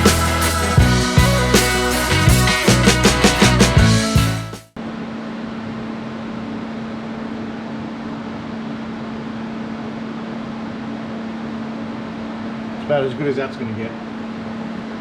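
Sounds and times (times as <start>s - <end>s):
rock music: 0.0s - 4.7s
electrical hum with fan hiss: 4.8s - 15.0s.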